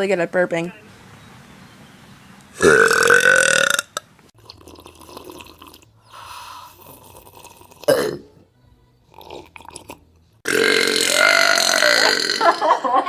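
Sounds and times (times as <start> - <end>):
person burping: 2.6 - 4.0, 6.9 - 8.3, 9.2 - 12.7.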